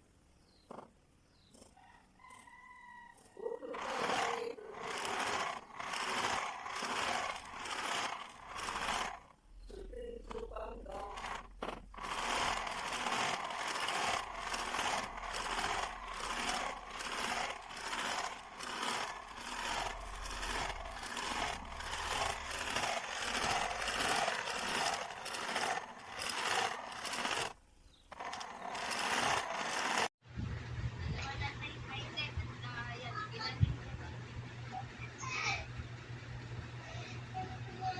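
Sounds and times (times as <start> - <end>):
sewing machine running: 3.4 - 30.2.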